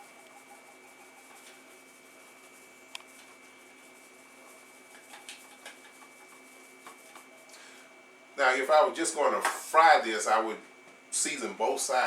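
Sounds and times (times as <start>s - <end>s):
faint high hum: 0.0s - 12.0s
shaker taps and clicks: 2.9s - 3.4s, 4.8s - 7.3s.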